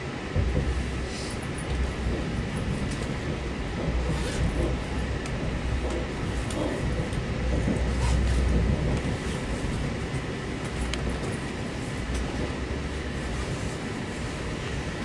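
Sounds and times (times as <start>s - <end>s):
train wheels rumbling on rail: 0.0s - 15.0s.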